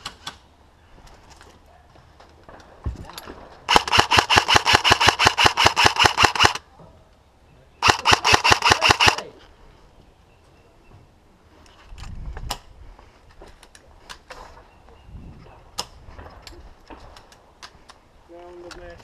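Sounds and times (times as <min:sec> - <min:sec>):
airsoft gun firing bursts: 0:03.7 - 0:06.6, 0:07.8 - 0:09.3.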